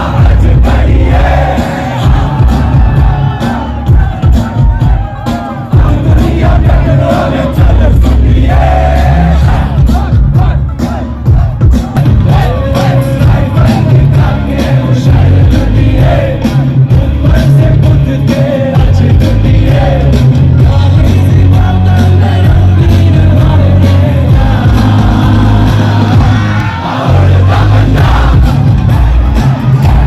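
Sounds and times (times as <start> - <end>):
crowd shouting: 0.0 - 16.8, 24.2 - 30.0
loud live band music: 0.0 - 30.0
person singing: 5.2 - 29.0.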